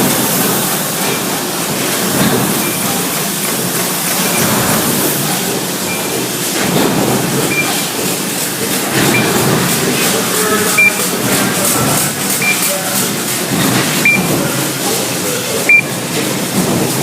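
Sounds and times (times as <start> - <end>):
factory machinery din: 0.0 - 17.0
short high-pitched tones: 10.8 - 11.1.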